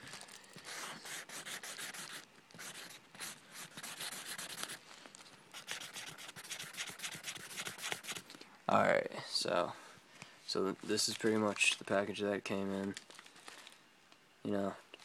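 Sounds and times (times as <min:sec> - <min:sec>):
pen scribbling on paper envelope: 0:00.5 - 0:04.8, 0:05.5 - 0:08.2.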